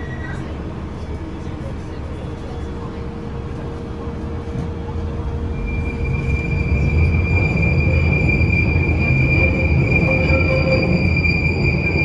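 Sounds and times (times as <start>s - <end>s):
train rumbling: 0.0s - 12.0s
high-pitched wheel squeal: 5.4s - 12.0s.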